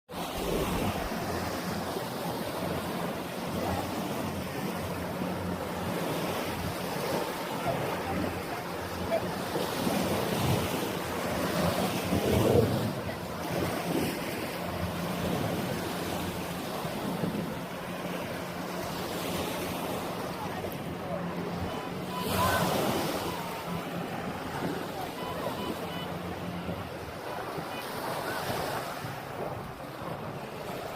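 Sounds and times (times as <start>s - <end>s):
small waves washing onto sand: 0.1s - 30.9s
wind buffeting microphone: 0.3s - 18.8s.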